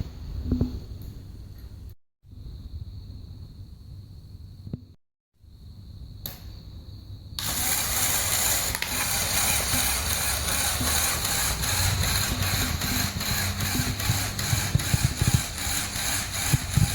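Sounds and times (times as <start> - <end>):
toy motor gear train whirring: 7.4 - 16.9.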